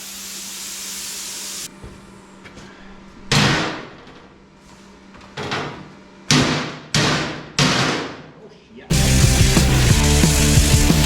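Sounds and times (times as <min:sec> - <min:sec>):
cutting tool hissing: 0:00.0 - 0:01.7.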